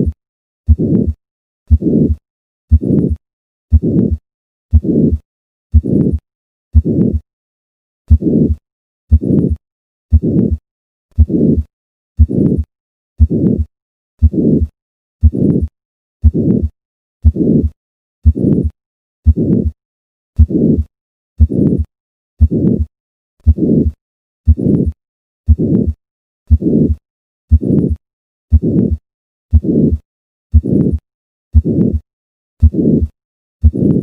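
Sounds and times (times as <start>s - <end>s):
heartbeat with harsh murmur: 0.0s - 7.2s, 8.1s - 19.8s, 20.4s - 34.0s.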